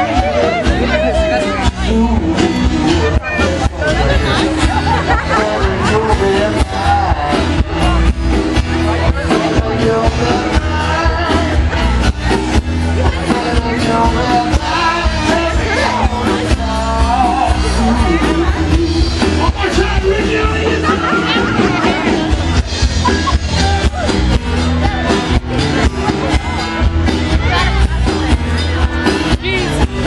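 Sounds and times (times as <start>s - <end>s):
person singing: 0.0s - 22.3s
music with heavy bass beat: 0.0s - 30.0s.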